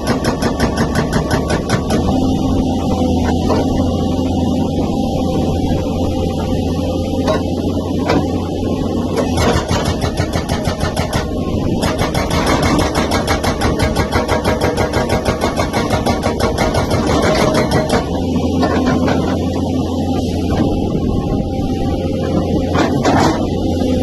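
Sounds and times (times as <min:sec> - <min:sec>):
hydraulic breaker hammering: 0:00.0 - 0:02.3, 0:09.2 - 0:19.3.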